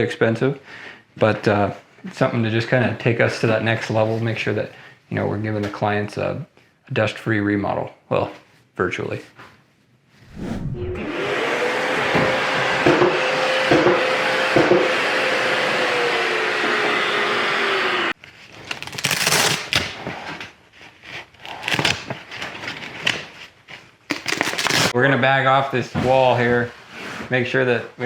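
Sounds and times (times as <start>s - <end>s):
drywall sander whirring: 10.6s - 18.2s
knocks: 12.1s - 14.9s.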